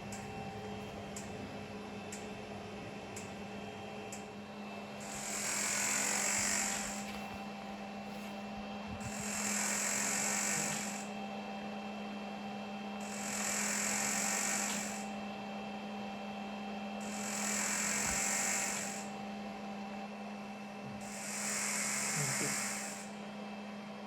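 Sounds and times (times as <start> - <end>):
electric device humming: 0.0 - 24.0.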